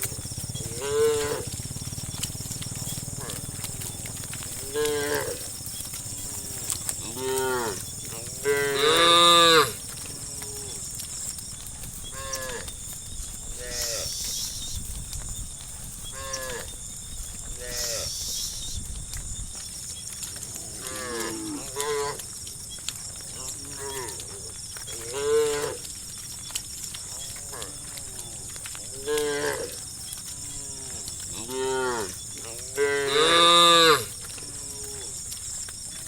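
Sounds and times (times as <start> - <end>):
cows mooing: 0.0 - 14.8, 16.0 - 16.8, 17.4 - 18.6, 20.4 - 22.3, 23.3 - 25.9, 27.1 - 35.3.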